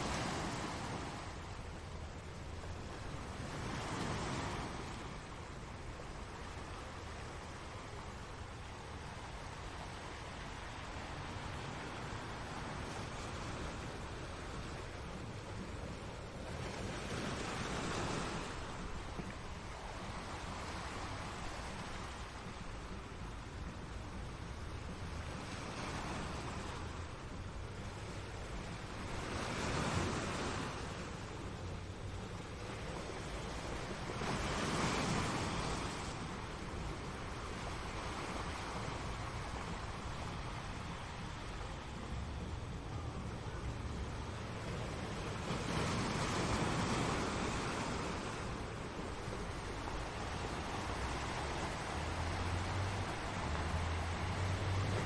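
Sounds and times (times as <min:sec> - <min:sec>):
ocean waves on shore: 0:00.0 - 0:55.0.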